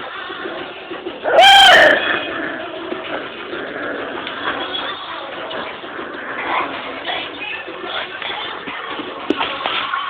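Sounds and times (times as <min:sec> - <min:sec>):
puppy crying: 0:01.2 - 0:02.8.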